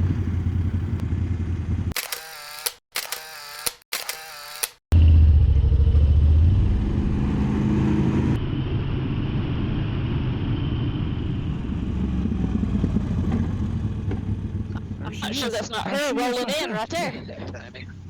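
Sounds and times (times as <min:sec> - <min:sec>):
motorcycle engine running: 0:00.0 - 0:02.0, 0:04.9 - 0:07.4, 0:08.1 - 0:15.2
road and wind noise: 0:00.0 - 0:02.0, 0:05.0 - 0:15.8, 0:17.2 - 0:18.0.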